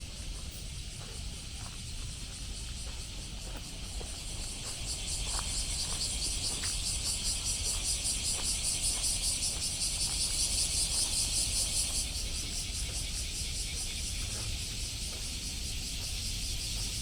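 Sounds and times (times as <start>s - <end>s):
cicadas buzzing: 0.0s - 17.0s.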